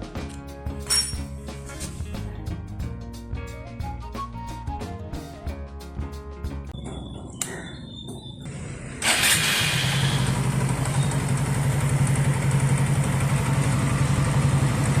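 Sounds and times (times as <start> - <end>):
motorcycle engine idling: 8.5 - 15.0.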